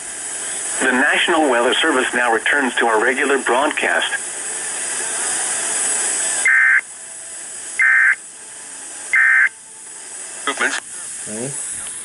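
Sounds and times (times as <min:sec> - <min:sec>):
radio hiss: 0:00.0 - 0:12.0
warbling data bursts: 0:06.2 - 0:06.9, 0:07.7 - 0:08.3, 0:09.1 - 0:09.6.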